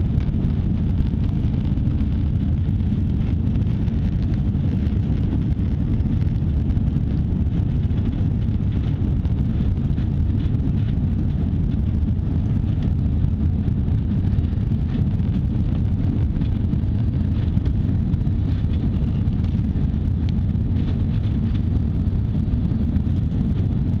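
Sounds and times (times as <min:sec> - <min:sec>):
airliner cabin roar: 0:00.0 - 0:24.0.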